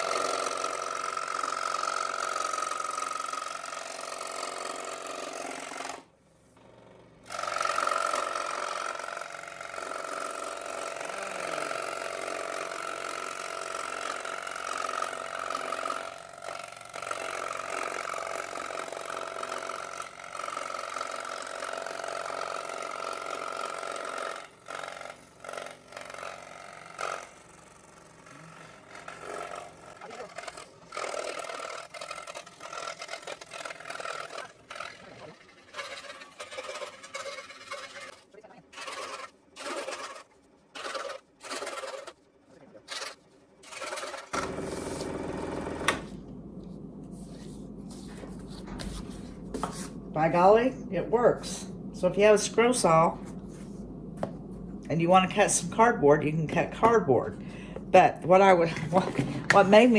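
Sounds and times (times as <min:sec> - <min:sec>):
scroll saw cutting cardboard: 0:07.3 - 0:50.0.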